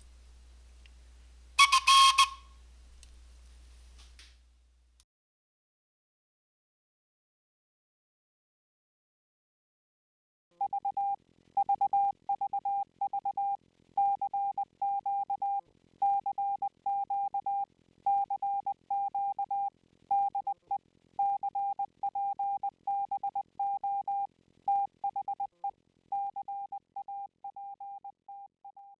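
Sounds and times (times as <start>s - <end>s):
morse code beeping: 1.6s - 2.4s.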